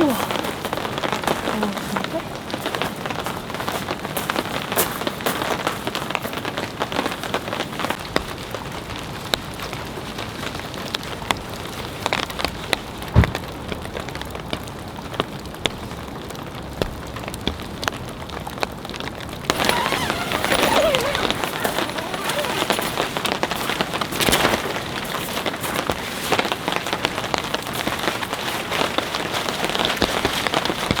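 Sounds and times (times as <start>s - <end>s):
rain falling: 0.0s - 31.0s
raindrops ticking: 5.9s - 20.4s
heavy thump: 13.2s - 13.5s.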